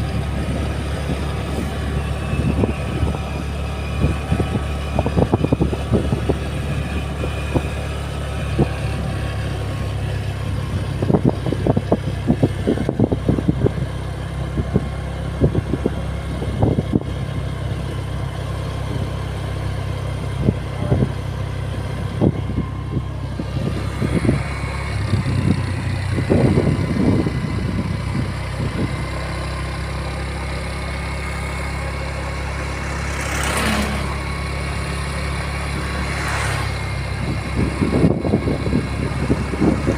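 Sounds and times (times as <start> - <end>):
vehicle engine rumbling: 0.0 - 39.9.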